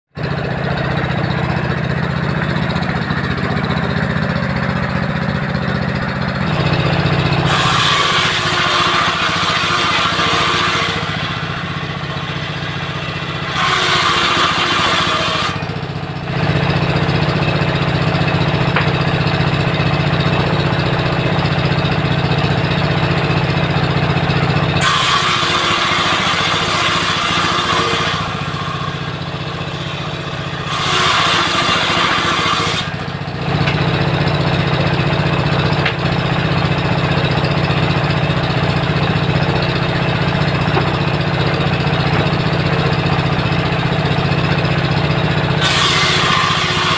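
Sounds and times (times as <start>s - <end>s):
diesel engine running: 0.1s - 46.9s
saw blade cutting wood: 0.6s - 46.9s.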